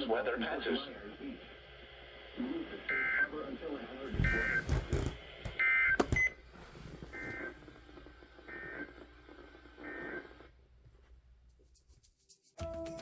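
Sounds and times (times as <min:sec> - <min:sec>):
radio hiss: 0:00.0 - 0:05.4, 0:06.5 - 0:10.6.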